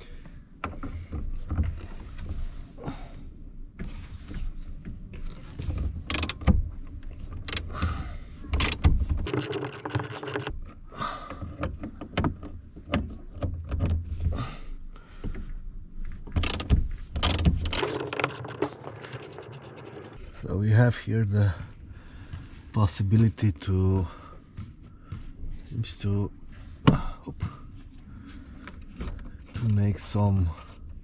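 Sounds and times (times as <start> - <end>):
ratchet wrench clicking: 6.1 - 6.4, 8.6 - 10.5, 16.4 - 20.2.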